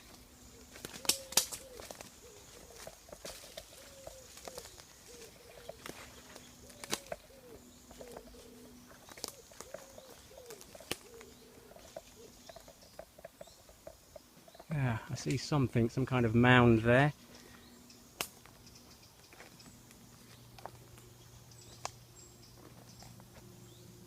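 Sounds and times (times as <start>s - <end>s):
footsteps on twigs: 0.0s - 14.7s, 17.2s - 23.6s
pigeon cooing: 0.5s - 14.2s.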